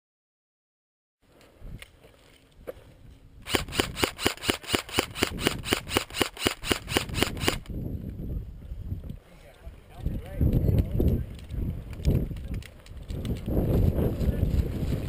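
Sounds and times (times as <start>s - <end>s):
airsoft gun rapid shots: 3.4s - 7.7s.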